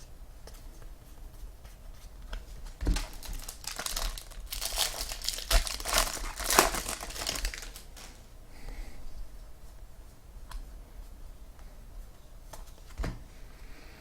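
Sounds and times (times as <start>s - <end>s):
foil wrapper crinkling: 2.3s - 8.3s.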